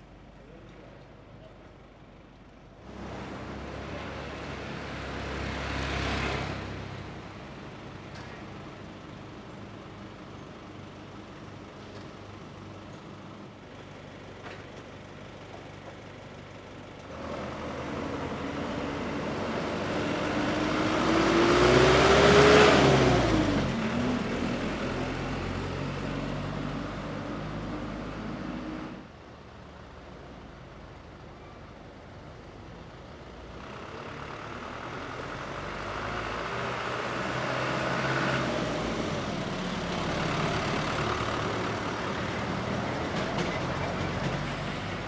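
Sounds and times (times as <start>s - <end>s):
vehicle engine passing by: 2.9s - 7.3s, 17.1s - 29.0s, 33.6s - 45.0s.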